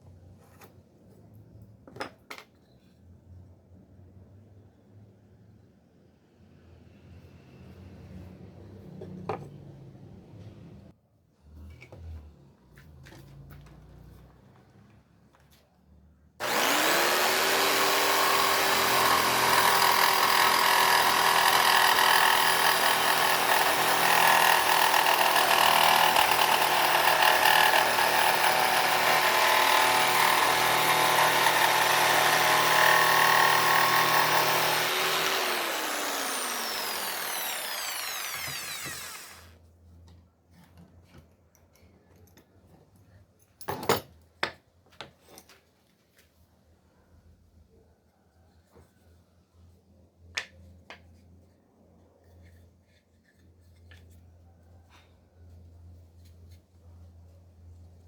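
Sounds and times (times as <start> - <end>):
power tool motor running: 16.4 - 39.5.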